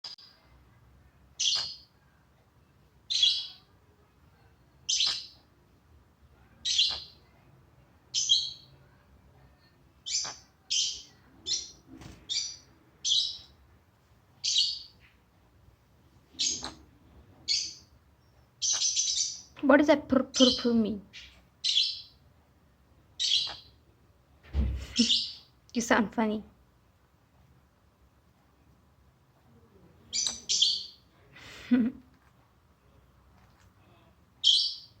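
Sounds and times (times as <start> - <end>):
bird chirping: 1.3 - 2.1, 3.0 - 3.7, 4.8 - 5.5, 6.4 - 7.4, 8.1 - 9.0, 10.0 - 13.6, 14.4 - 15.3, 16.3 - 19.6, 20.3 - 22.2, 23.2 - 23.8, 24.8 - 25.6, 30.0 - 31.1, 34.4 - 35.0.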